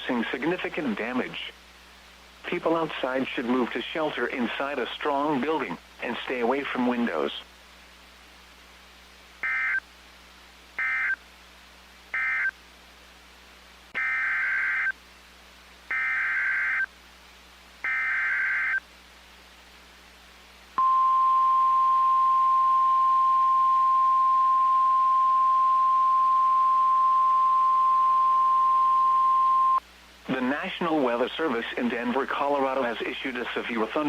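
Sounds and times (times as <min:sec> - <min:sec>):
steady warning alarm tone: 0:10.8 - 0:11.2, 0:15.9 - 0:16.9, 0:17.9 - 0:18.8.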